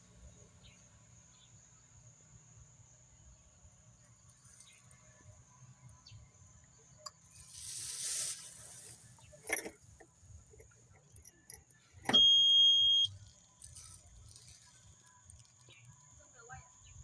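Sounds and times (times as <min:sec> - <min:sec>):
high electronic beep: 0:12.1 - 0:13.2.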